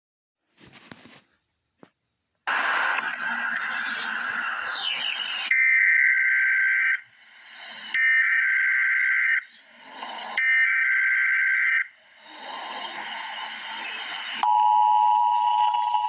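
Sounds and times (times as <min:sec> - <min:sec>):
radio static: 0:02.5 - 0:14.4
digital data tone bursts: 0:02.5 - 0:16.0.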